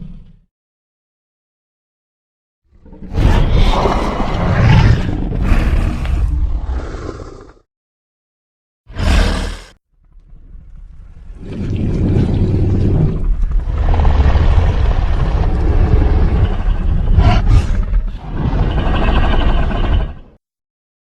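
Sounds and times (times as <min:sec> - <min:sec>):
deep rumbling dinosaur growl: 0:02.8 - 0:07.6, 0:08.9 - 0:20.0.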